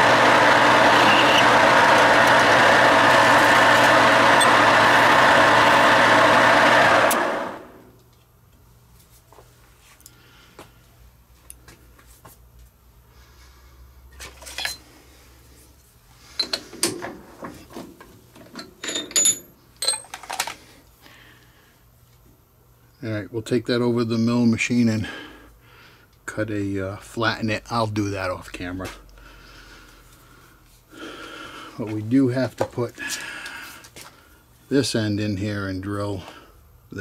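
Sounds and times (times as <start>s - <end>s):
metal lathe running: 0.0s - 7.8s.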